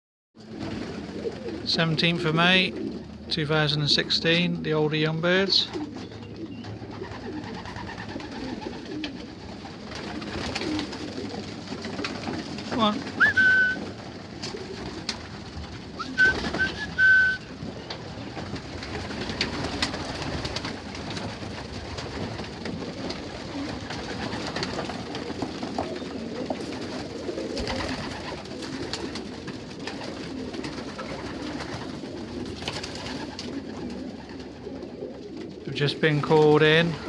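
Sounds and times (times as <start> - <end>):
pigeons cooing: 0.4 - 37.0
birds tapping at feed: 4.2 - 37.0
short high whistle notes: 13.2 - 13.8, 16.0 - 17.4.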